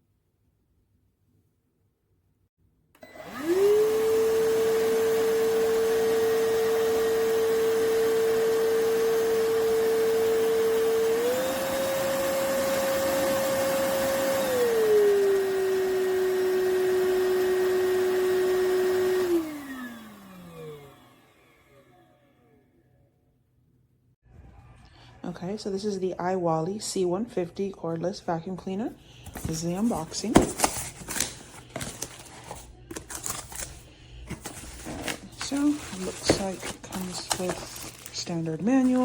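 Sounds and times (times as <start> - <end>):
stick vacuum motor whining: 3.0 - 22.4, 30.5 - 39.0.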